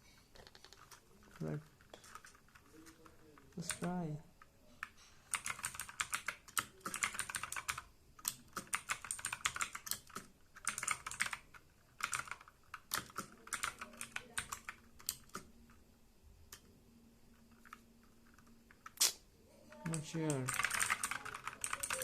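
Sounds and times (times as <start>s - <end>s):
mechanical keyboard clicks: 5.3s - 15.5s, 19.8s - 22.0s.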